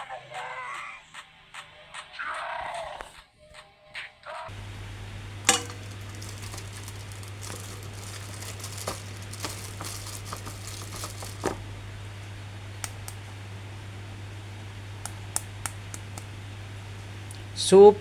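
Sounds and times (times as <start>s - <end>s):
plastic packaging crinkling: 4.5s - 12.1s
steady low hum: 4.5s - 18.0s.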